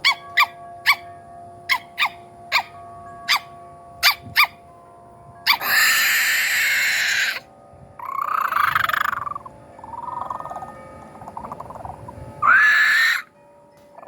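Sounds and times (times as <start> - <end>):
rough drawn-out call: 8.0 - 13.3
person yipping: 12.4 - 13.2.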